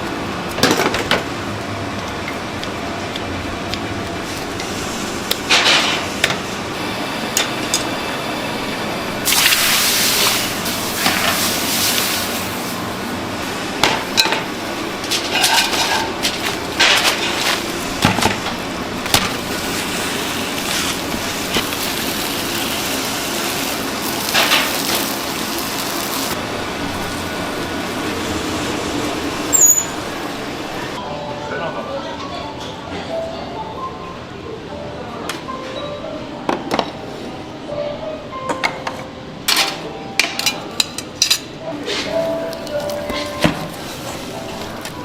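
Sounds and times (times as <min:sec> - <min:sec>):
steady background hum: 0:00.0 - 0:45.0
utensils and containers clinking: 0:13.8 - 0:23.0, 0:39.5 - 0:45.0.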